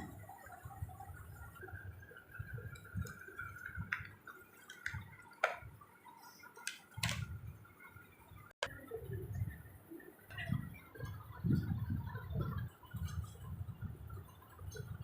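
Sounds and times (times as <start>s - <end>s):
handling taps and clicks: 2.8s - 5.8s, 6.6s - 7.4s.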